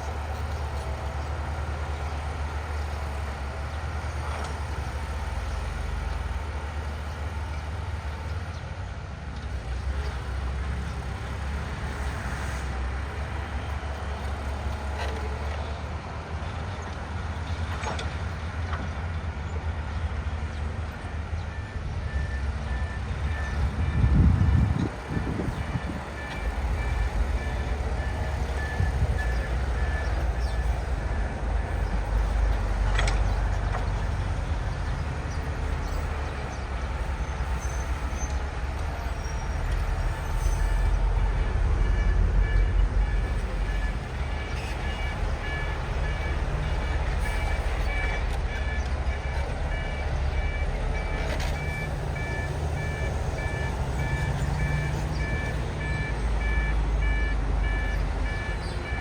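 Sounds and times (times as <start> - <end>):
diesel engine rumbling: 0.0 - 59.0
reversing alarm beeping: 21.1 - 36.2, 39.0 - 59.0.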